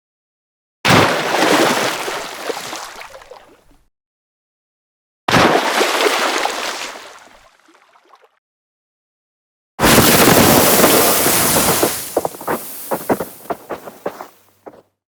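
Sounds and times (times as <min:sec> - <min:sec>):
water debris splashing spray: 0:09.8 - 0:14.4
snow debris rushing spray: 0:09.8 - 0:14.5.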